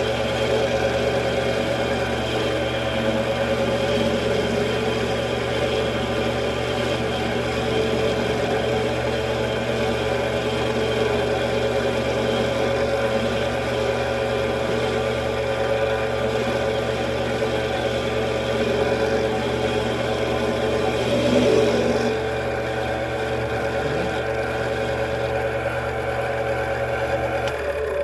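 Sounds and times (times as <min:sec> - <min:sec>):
metal lathe motor humming: 0:00.0 - 0:28.0.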